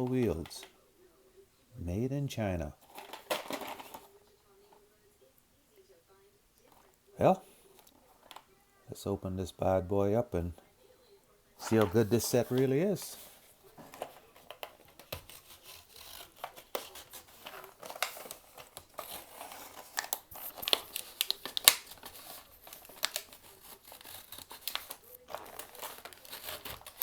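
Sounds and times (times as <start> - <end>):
packaging crinkling and tearing: 2.8 - 4.1, 11.6 - 27.0.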